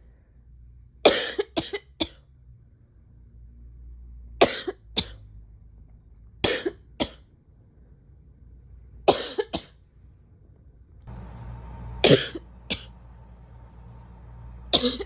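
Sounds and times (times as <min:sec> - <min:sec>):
person coughing: 0:01.1 - 0:02.2, 0:04.4 - 0:05.2, 0:06.4 - 0:07.2, 0:09.1 - 0:09.8, 0:12.0 - 0:12.9, 0:14.7 - 0:15.0.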